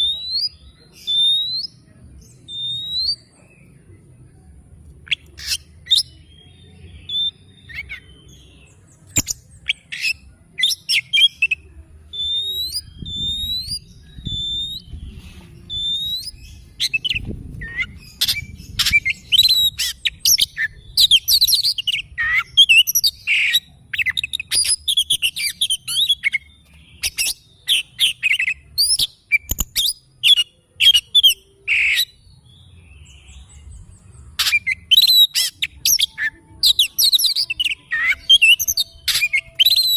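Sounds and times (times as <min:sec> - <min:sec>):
bird singing whistles and chatter: 0:00.0 - 0:04.0, 0:05.0 - 0:39.9.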